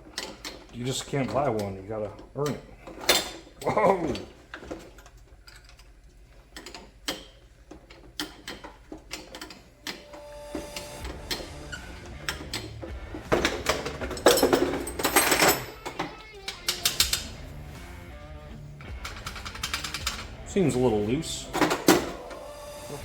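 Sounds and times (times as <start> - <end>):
metal clatter: 11.0 - 17.8, 18.8 - 20.4
hand tools clicking on metal: 11.1 - 17.6, 18.8 - 20.5.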